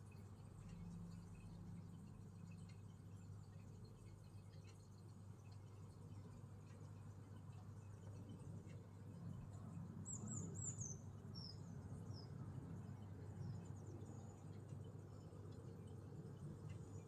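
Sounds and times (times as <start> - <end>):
faint high-pitched bird chirps: 10.0 - 12.4.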